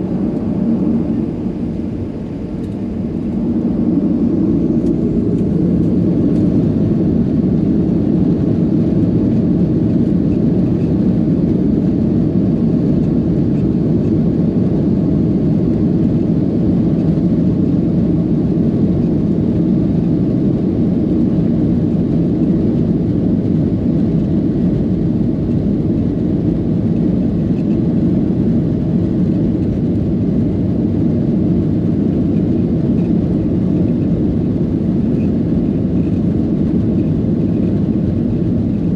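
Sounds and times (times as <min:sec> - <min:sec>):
airliner engines droning: 0:00.0 - 0:38.9.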